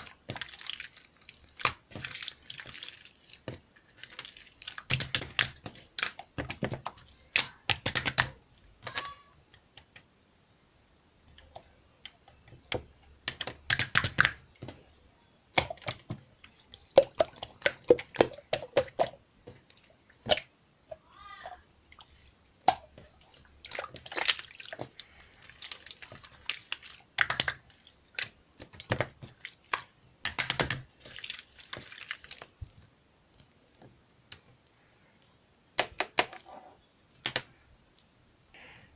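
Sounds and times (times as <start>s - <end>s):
hands squishing slime: 0.0s - 10.1s, 11.0s - 20.5s, 21.2s - 37.6s.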